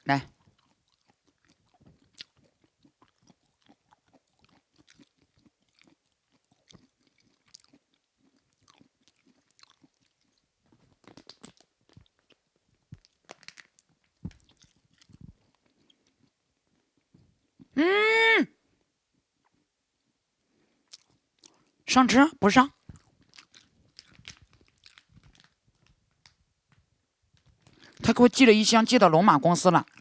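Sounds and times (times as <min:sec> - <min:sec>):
person chewing and crunching: 0:00.3 - 0:17.7, 0:20.7 - 0:21.8, 0:22.7 - 0:26.4, 0:27.4 - 0:28.0.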